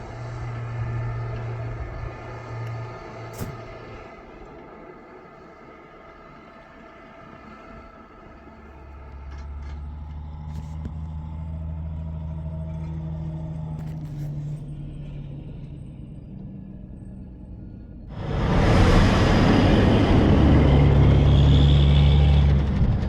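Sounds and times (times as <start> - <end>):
vehicle engine humming: 0.0 - 23.0
loud rushing noise: 18.1 - 23.0.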